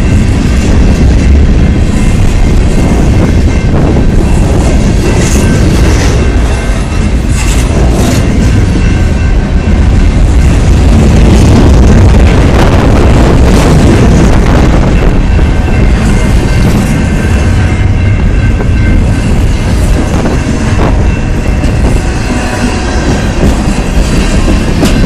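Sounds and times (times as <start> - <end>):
freight train rumbling past: 0.0 - 25.0
wheels clacking over rail joints: 13.6 - 25.0.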